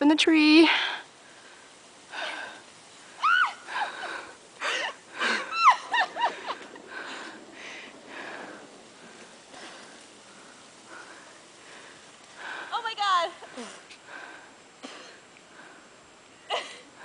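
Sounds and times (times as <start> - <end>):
soft rushes of noise: 1.0 - 12.8.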